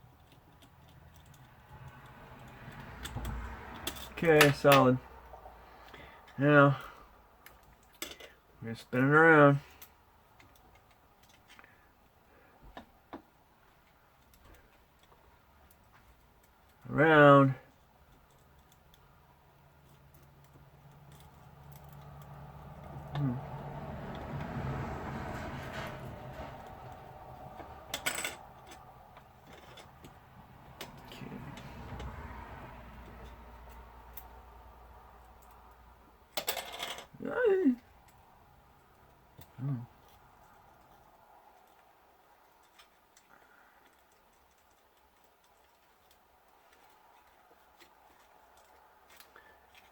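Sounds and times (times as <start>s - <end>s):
small metal parts clinking: 0.0s - 4.9s, 7.4s - 8.4s, 19.7s - 23.2s, 27.8s - 30.2s, 35.2s - 37.2s
tools clattering: 36.4s - 37.1s.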